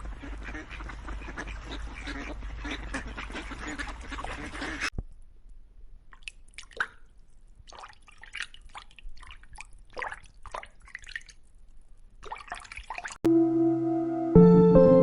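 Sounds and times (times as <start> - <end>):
water dripping and splashing: 3.8 - 4.9, 6.1 - 13.3.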